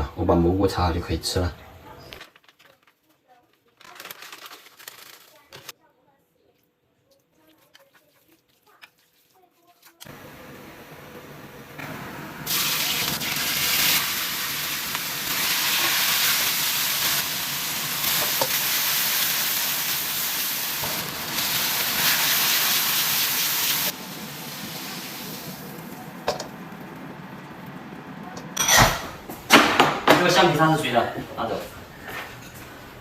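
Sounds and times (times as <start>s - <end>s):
mushrooms sizzling in hot pan: 10.2s - 26.9s.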